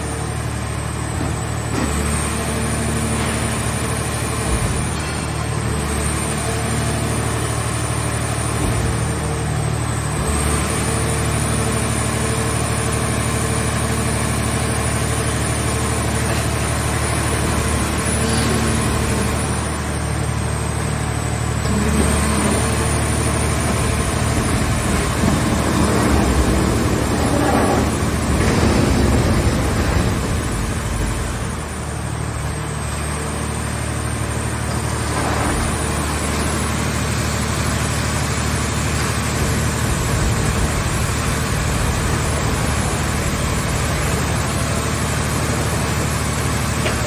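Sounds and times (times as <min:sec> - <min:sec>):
hydraulic power unit running: 0:00.0 - 0:47.0.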